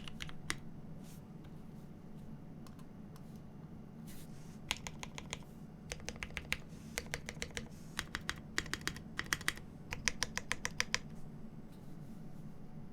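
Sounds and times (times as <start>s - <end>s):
mechanical keyboard typing: 0.0s - 0.6s, 4.7s - 11.1s.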